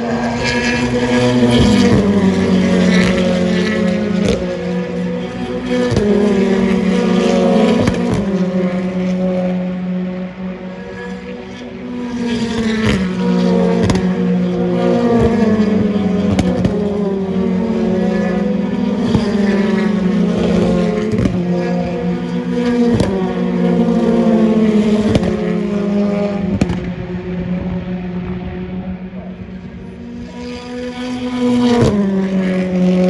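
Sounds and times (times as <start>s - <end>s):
racing car engines at full throttle: 0.0s - 33.0s.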